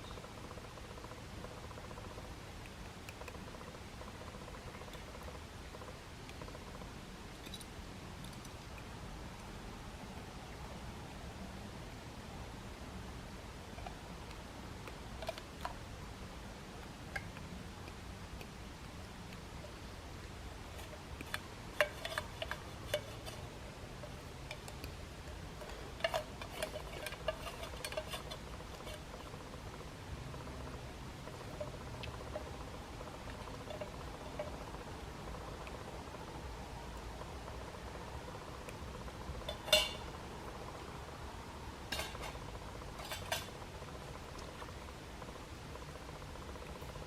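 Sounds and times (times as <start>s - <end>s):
cutlery tapping metal dish: 39.5s - 40.0s
short metallic ring: 39.6s - 40.0s.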